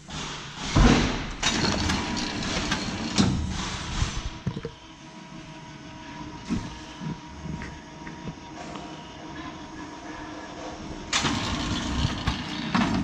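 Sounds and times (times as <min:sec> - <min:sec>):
binding machine running: 0:01.3 - 0:04.5, 0:11.0 - 0:13.0
faint machine whine: 0:01.4 - 0:13.0.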